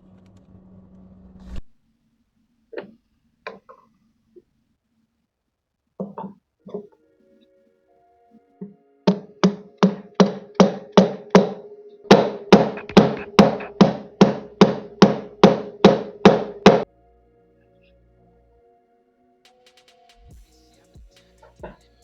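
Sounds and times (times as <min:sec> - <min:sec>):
hammer blows: 0:09.1 - 0:16.8.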